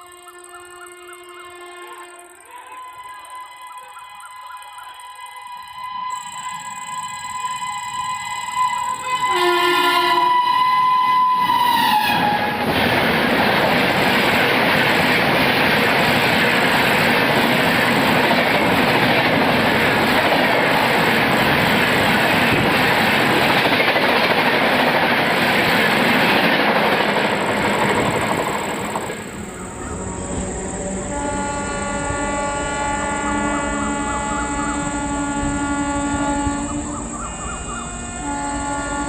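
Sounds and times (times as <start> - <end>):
train horn: 0.0 - 12.9, 29.8 - 39.0
train passing at high speed: 0.0 - 39.0.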